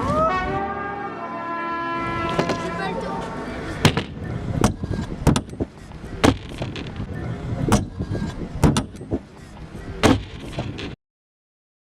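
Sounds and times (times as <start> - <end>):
skateboard rolling: 2.2 - 11.0.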